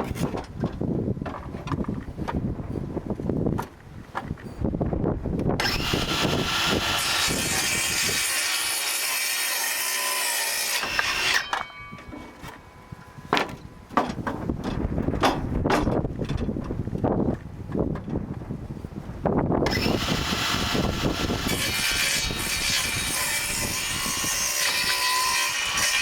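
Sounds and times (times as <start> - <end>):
wind buffeting microphone: 0.0 - 8.8, 10.8 - 26.0
circular saw cutting wood: 5.6 - 11.7, 19.7 - 26.0.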